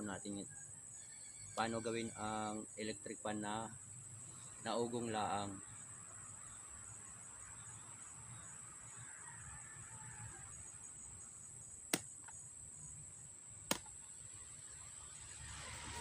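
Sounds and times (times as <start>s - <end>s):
sharp clicks: 13.7s - 14.0s.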